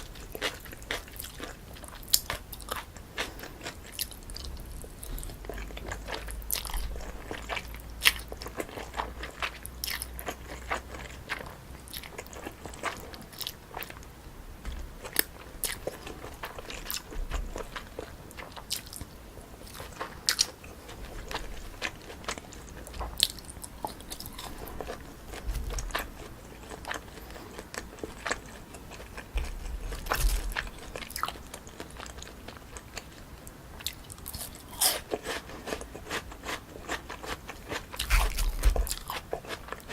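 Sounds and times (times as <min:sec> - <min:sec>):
chewing noodles: 0:00.0 - 0:14.1, 0:14.8 - 0:39.9
sharp crunches: 0:38.0 - 0:39.2.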